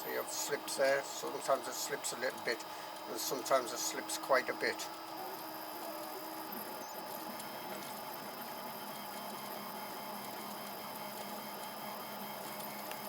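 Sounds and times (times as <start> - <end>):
printer fans and motors hissing: 0.0 - 13.0.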